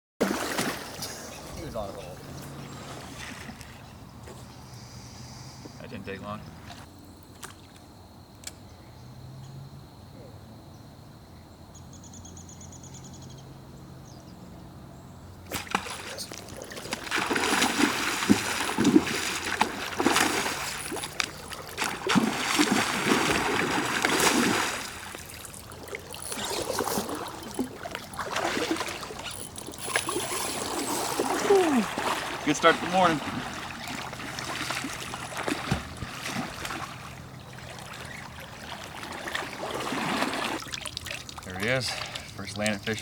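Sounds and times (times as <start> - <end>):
fish splashing at water surface: 0.2 - 1.4, 15.5 - 42.4.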